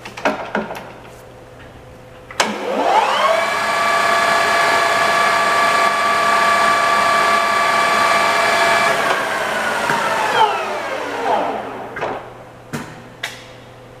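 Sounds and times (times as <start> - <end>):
lathe gear whine: 2.4 - 12.0.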